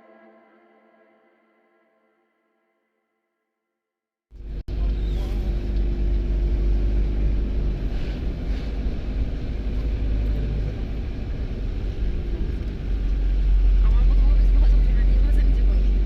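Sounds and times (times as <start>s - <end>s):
vehicle road and engine rumble: 4.4s - 16.0s
low wind buffeting: 4.5s - 16.0s.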